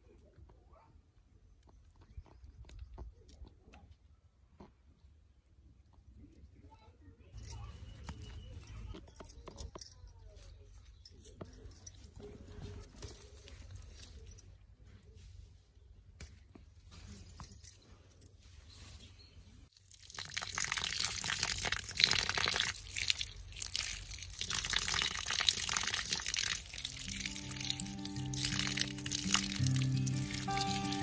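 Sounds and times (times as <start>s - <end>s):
water pouring and splashing: 19.7s - 31.0s.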